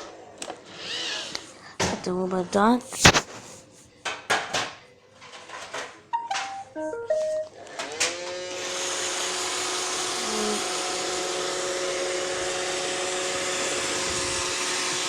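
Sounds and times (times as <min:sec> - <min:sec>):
robot vacuum motors whining: 0:00.4 - 0:01.5, 0:07.9 - 0:15.0.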